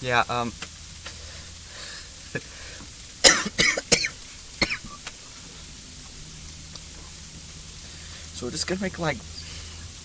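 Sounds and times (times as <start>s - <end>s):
person coughing: 3.2s - 4.9s.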